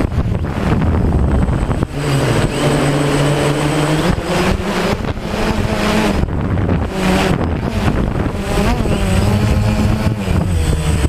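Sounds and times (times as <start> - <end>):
drone propellers humming: 0.0 - 11.0
wind buffeting microphone: 0.0 - 11.0.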